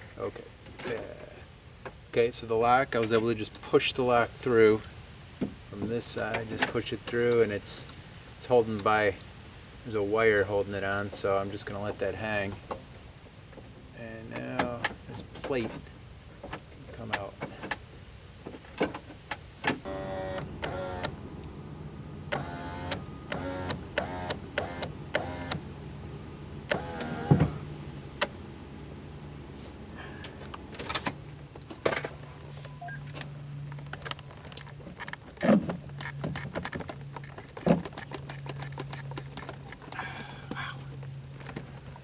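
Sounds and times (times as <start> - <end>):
power window motor hum: 19.7 - 31.4.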